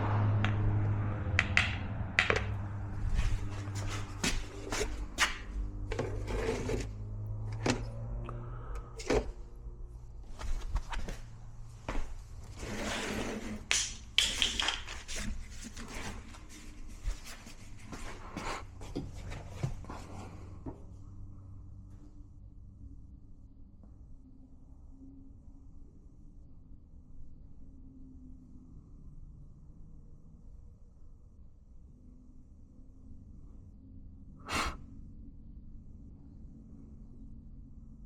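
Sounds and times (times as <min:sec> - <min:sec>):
steady low hum: 0:00.0 - 0:13.2
rustling smear: 0:03.0 - 0:05.5.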